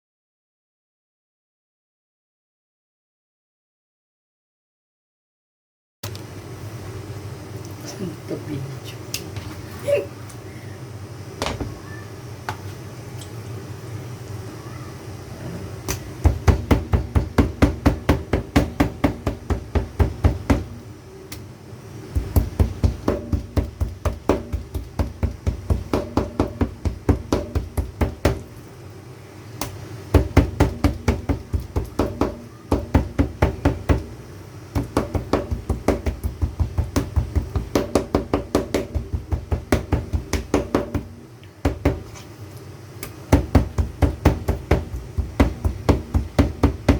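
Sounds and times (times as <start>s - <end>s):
chopping on a chopping board: 16.2s - 20.7s, 22.2s - 28.4s, 34.8s - 41.1s, 43.3s - 46.9s.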